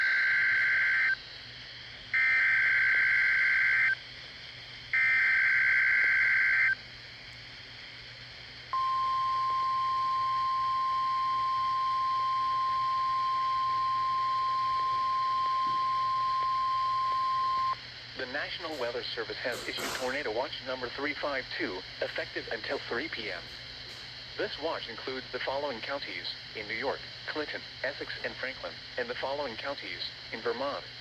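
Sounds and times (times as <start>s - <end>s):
steady alarm tone: 0.0s - 1.2s.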